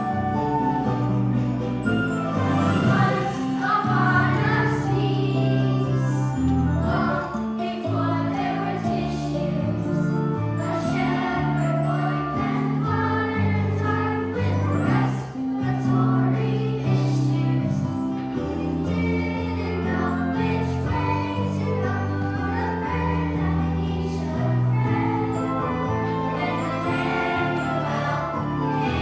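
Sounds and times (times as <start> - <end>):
choir singing with accompaniment: 0.0 - 29.0.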